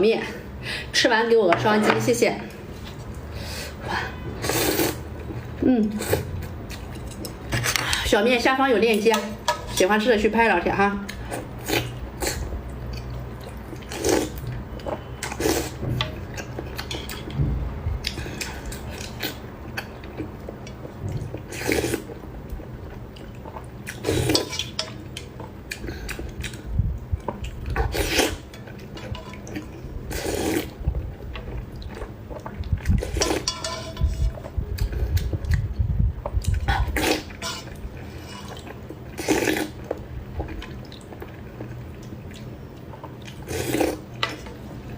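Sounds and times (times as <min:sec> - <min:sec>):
noodle slurping and chewing: 0:04.4 - 0:08.0, 0:11.3 - 0:15.8, 0:21.1 - 0:22.2, 0:23.1 - 0:44.4
utensils clinking on dish: 0:33.1 - 0:34.4.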